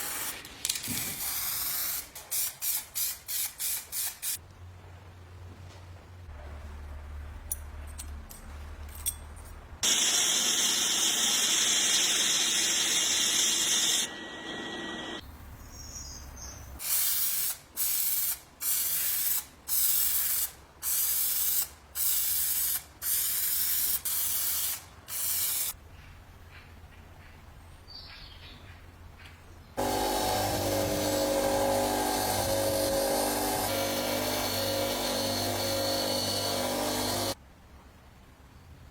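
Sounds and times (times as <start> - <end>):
humming machine: 9.8 - 15.2, 29.8 - 37.4.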